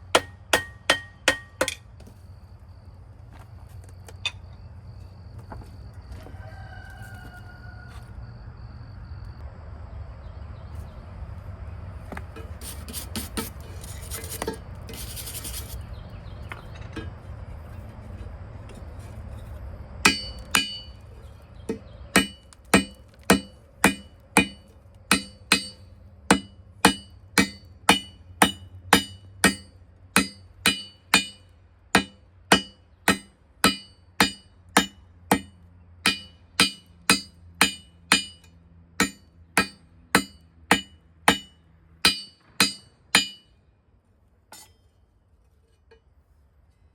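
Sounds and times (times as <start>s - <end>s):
hammer striking steel on anvil: 0.1s - 1.8s, 20.0s - 21.0s, 22.2s - 43.6s, 44.5s - 44.9s
brief scraping: 12.4s - 15.9s.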